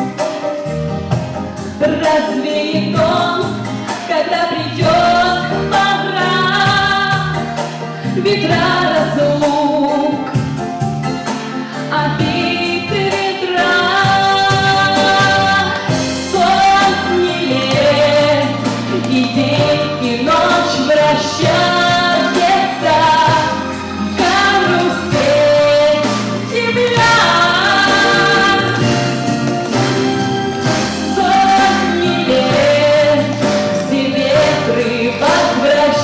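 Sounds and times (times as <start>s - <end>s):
pop backing track: 0.0s - 36.0s
woman singing slow melody: 8.1s - 10.3s, 11.9s - 29.0s, 30.7s - 36.0s.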